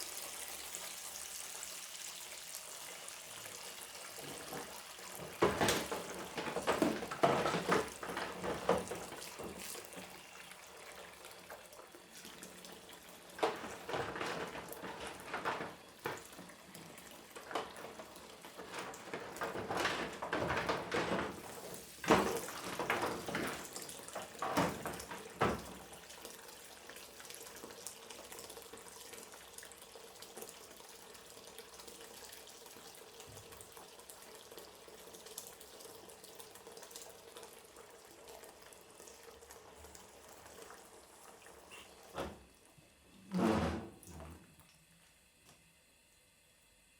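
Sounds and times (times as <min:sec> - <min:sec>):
tap water running and splashing: 0:00.0 - 0:46.9
dishes and cutlery clattering: 0:18.5 - 0:21.5.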